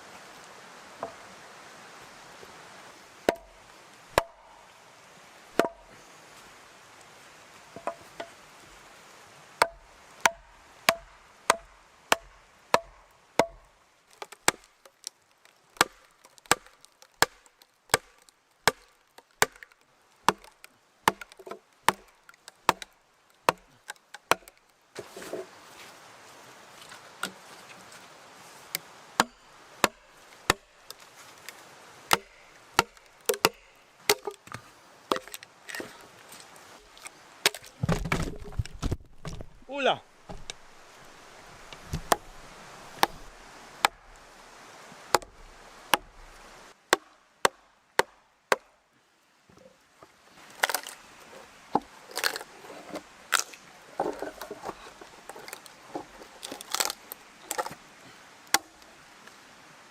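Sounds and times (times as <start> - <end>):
wood chopping strikes: 3.3 - 3.6, 4.2 - 4.4, 5.6 - 5.9, 9.6 - 15.1, 15.8 - 25.4, 29.2 - 31.0, 32.1 - 36.0, 37.0 - 40.8, 41.6 - 44.2, 45.1 - 48.7, 55.9 - 57.8, 58.5 - 58.8.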